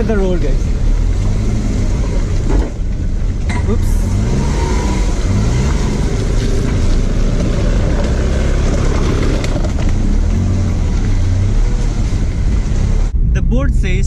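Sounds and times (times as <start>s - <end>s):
car engine and tyres rumbling: 0.0s - 14.0s.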